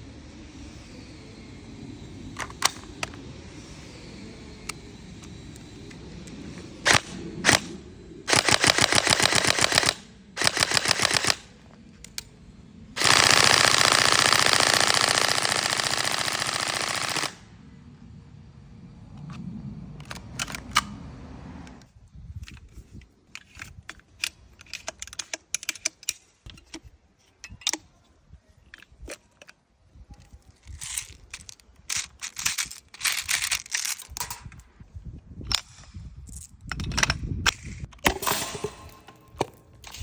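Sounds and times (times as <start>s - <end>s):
airsoft gun firing: 8.3s - 11.5s, 13.0s - 17.4s, 38.0s - 39.6s
gun handling clicks: 20.0s - 20.9s, 22.4s - 27.9s, 30.7s - 34.6s.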